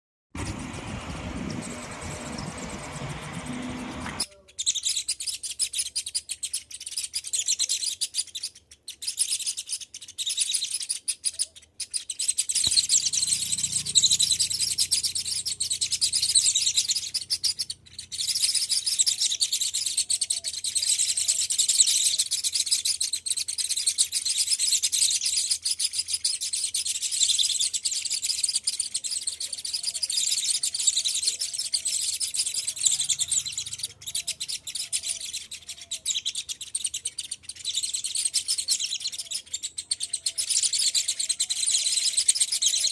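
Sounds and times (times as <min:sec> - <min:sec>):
small birds chirping: 0:00.4 - 0:42.9.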